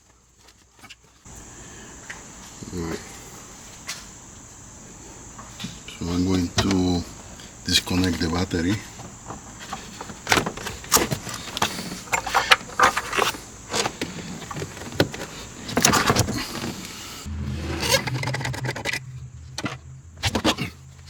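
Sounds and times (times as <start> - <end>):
low steady hum: 16.1 - 21.0.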